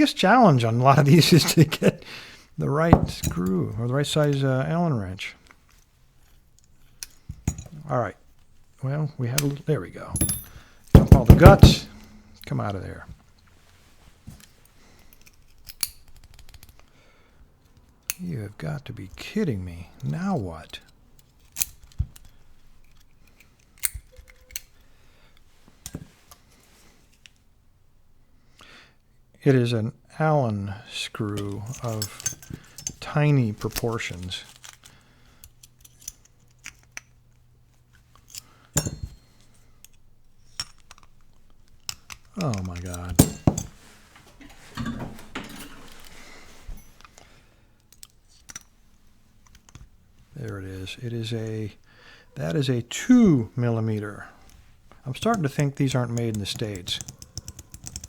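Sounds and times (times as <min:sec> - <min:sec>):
metal tools scraping: 0:09.3 - 0:12.6, 0:31.3 - 0:34.8, 0:42.1 - 0:47.2
hex wrenches clicking and rattling: 0:31.4 - 0:47.2, 0:55.1 - 0:58.0
metallic clicks of small tools: 0:38.1 - 0:43.7, 0:55.2 - 0:58.0.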